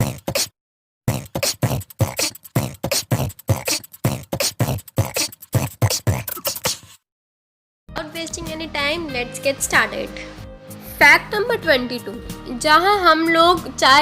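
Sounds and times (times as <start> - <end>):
fast beatbox beat: 0.0 - 7.0.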